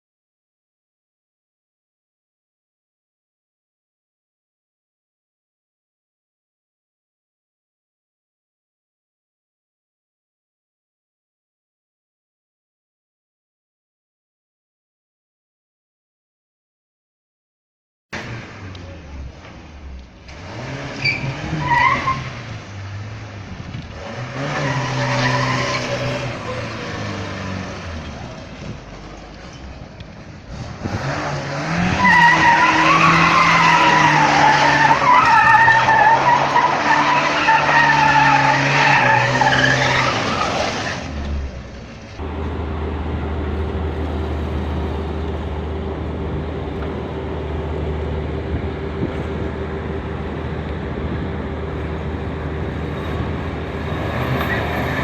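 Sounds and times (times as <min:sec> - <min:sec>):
car engine revving: 0:18.2 - 0:29.1, 0:30.4 - 0:55.0
tyres squealing: 0:24.4 - 0:27.1, 0:32.0 - 0:41.1
low engine drone: 0:41.6 - 0:53.8.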